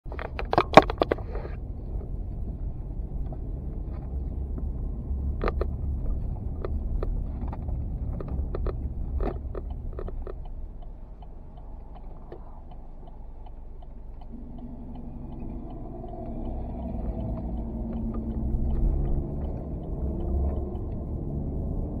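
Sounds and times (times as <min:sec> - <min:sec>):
steady low rumble: 0:01.5 - 0:22.0
pitched hum: 0:11.0 - 0:22.0.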